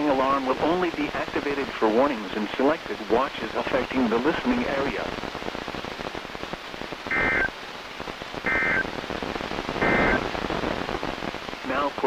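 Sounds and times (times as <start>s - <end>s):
radio hiss: 0.0s - 12.0s
warbling digital data bursts: 7.1s - 7.5s, 8.4s - 8.9s, 9.8s - 10.3s.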